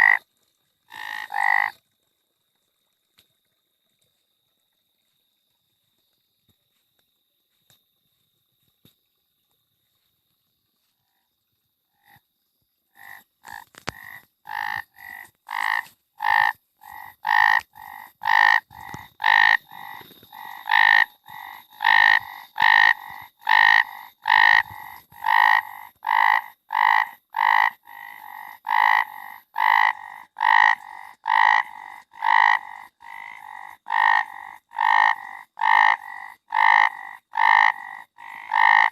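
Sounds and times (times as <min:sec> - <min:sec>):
frog croaking: 0:00.0 - 0:00.3, 0:00.9 - 0:01.8, 0:11.9 - 0:12.2, 0:12.9 - 0:38.9.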